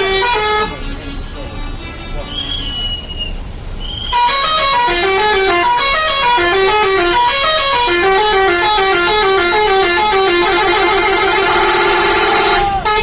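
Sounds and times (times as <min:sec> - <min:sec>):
air horn playing a fast tune: 0:00.0 - 0:00.8, 0:04.1 - 0:13.0.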